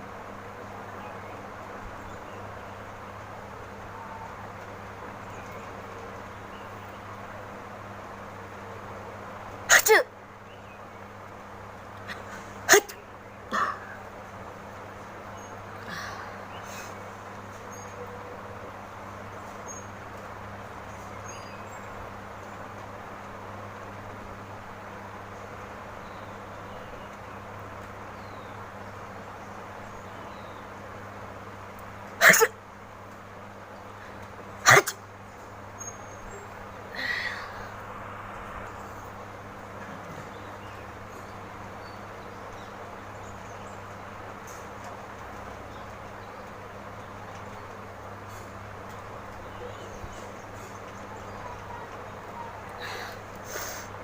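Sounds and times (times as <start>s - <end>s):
low background hum: 0.0s - 54.0s
woman sneezing: 9.7s - 10.1s, 12.7s - 13.0s, 32.2s - 32.6s, 34.6s - 35.0s
faint breath: 15.8s - 17.2s, 36.9s - 38.0s, 52.8s - 54.0s
breathy sound: 36.9s - 38.0s.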